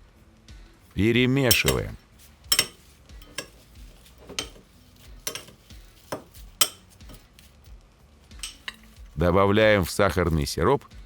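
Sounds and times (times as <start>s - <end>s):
spoon clinking against a dish: 1.5s - 7.2s, 8.4s - 9.1s.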